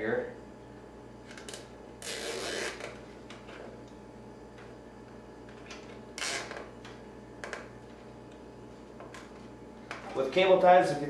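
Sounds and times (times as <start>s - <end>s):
steady low hum: 0.0s - 11.0s
zip ties rasping: 1.4s - 2.8s.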